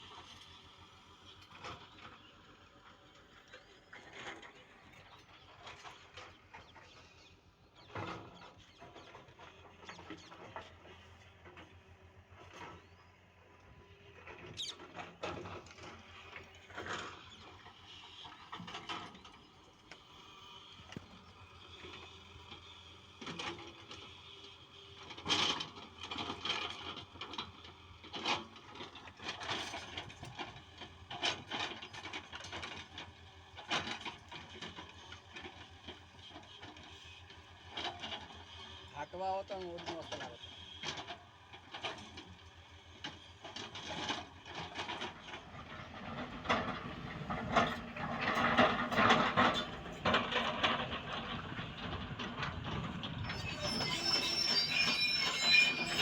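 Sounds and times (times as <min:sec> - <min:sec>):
diesel engine running: 0:42.3 - 0:56.0
digging arm squeaking and clanking: 0:47.0 - 0:56.0.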